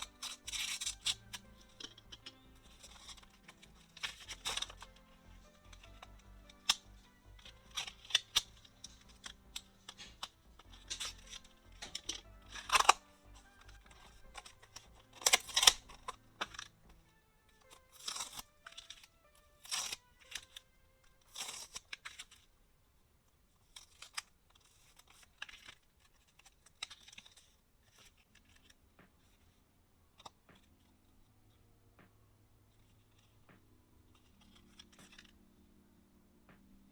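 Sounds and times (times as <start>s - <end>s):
paper packaging tearing and crinkling: 0.0s - 22.5s
quiet background music: 0.0s - 36.9s.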